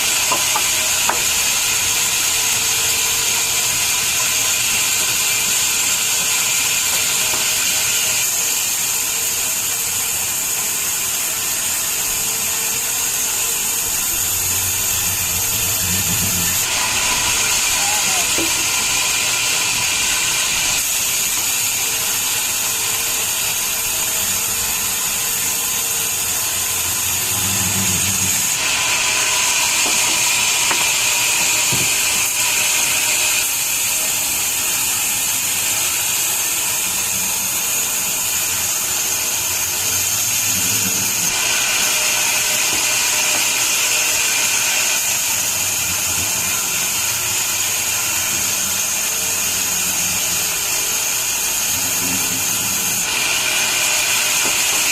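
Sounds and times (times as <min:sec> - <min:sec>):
sawmill machinery whining: 0:00.0 - 0:54.9.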